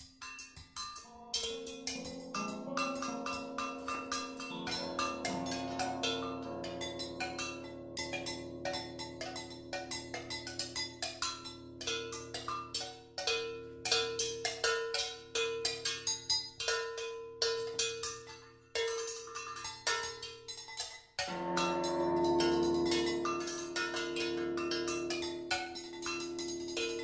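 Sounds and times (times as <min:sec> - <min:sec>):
ringing percussion strikes: 0:00.0 - 0:27.0
held low tones: 0:01.0 - 0:12.4.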